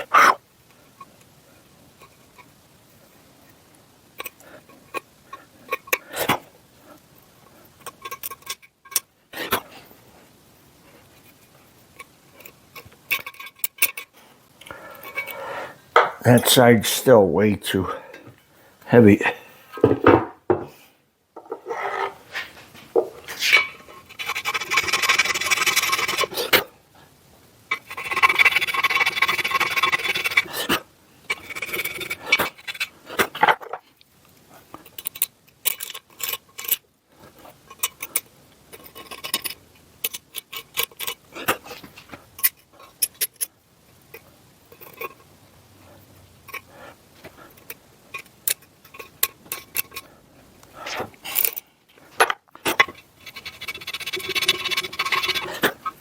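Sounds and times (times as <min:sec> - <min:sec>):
rasping scrapes on metal: 0:53.2 - 0:56.0.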